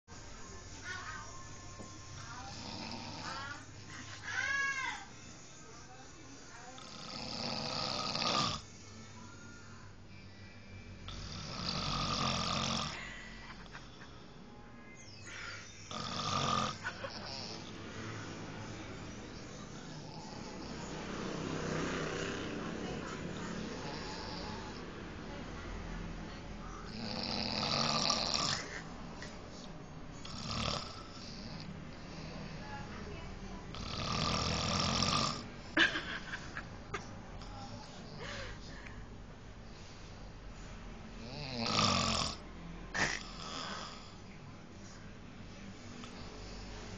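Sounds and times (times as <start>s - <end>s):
person snoring: 2.4s - 3.6s, 6.8s - 8.7s, 11.1s - 13.8s, 15.3s - 24.9s, 26.9s - 28.8s, 30.2s - 32.7s, 33.7s - 35.5s, 41.2s - 42.4s, 43.0s - 44.3s.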